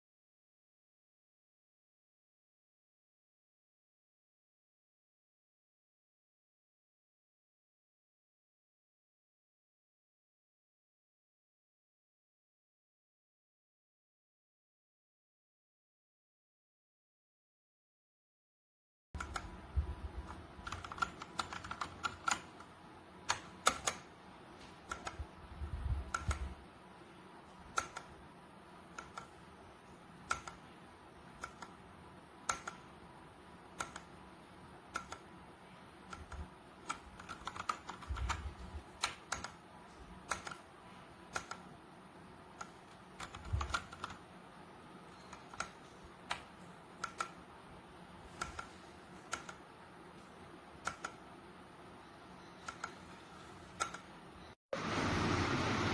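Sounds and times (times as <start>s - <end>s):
mechanical keyboard key clicks: 20.6s - 22.6s, 30.3s - 30.6s, 32.5s - 32.8s, 34.9s - 35.2s, 36.1s - 38.4s, 42.6s - 44.2s, 45.3s - 47.4s.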